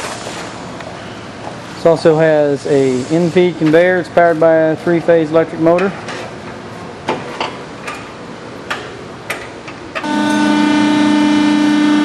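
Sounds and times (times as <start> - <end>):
baler machine drone: 10.0 - 12.0.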